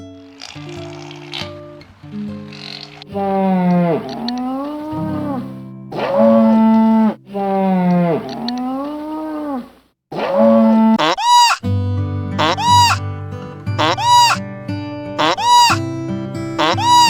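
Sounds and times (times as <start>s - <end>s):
high-pitched animal call: 2.5s - 11.6s, 12.4s - 13.0s, 13.8s - 14.4s, 15.2s - 15.8s, 16.6s - 17.0s
long pitched animal calls: 2.5s - 11.6s, 12.4s - 13.0s, 13.8s - 14.4s, 15.2s - 15.8s, 16.6s - 17.0s.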